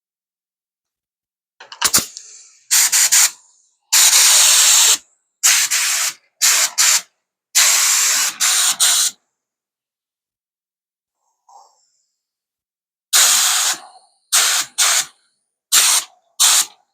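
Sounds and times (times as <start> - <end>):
spray gun hissing: 2.0 - 9.2, 13.2 - 15.1, 15.7 - 16.7.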